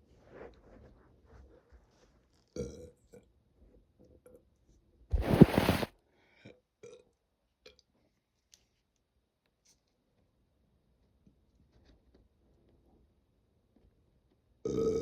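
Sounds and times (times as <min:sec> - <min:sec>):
person burping: 0:14.6 - 0:15.0.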